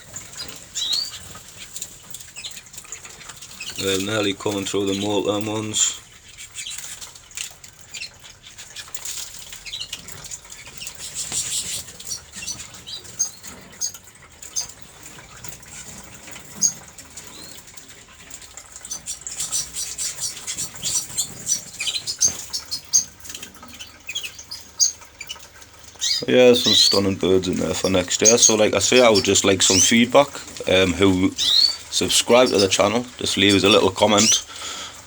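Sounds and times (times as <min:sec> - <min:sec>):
canaries chirping: 0:00.0 - 0:35.0
wings flapping: 0:08.7 - 0:13.8, 0:14.4 - 0:34.5.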